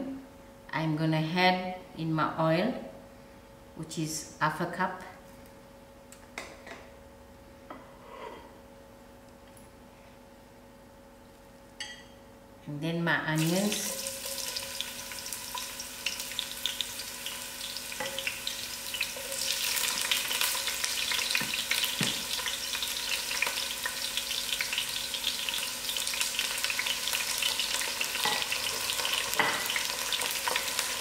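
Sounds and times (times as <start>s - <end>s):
onion sizzling in hot oil: 13.4s - 31.0s.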